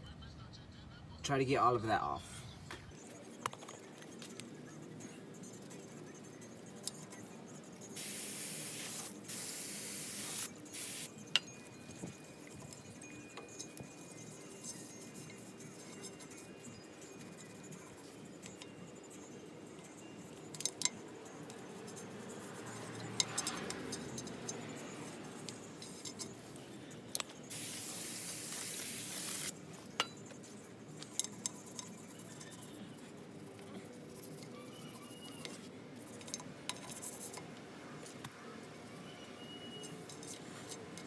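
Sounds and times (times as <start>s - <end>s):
steady hiss: 8.0s - 11.1s, 27.5s - 29.5s.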